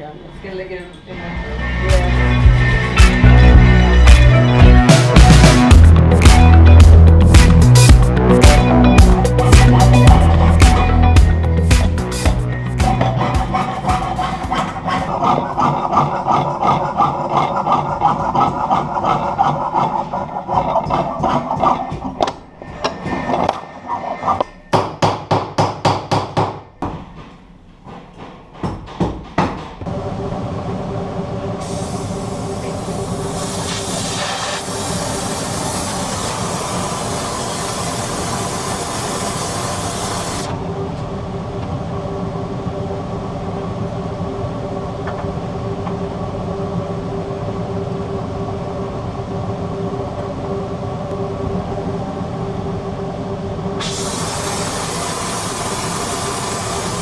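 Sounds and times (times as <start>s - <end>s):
electric machine humming: 1.1s - 15.2s
loud hiss: 31.6s - 40.5s, 53.8s - 57.0s.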